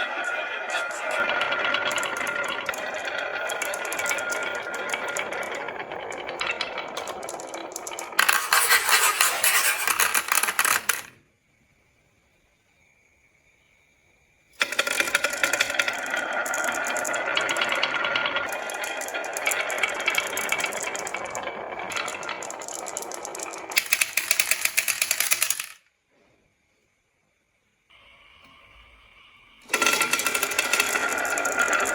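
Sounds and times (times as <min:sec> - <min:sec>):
marbles rolling on wooden run: 0:00.0 - 0:11.2, 0:14.6 - 0:25.8, 0:29.6 - 0:31.9
dense clattering of marbles: 0:00.7 - 0:11.2, 0:14.6 - 0:25.8, 0:29.7 - 0:31.9.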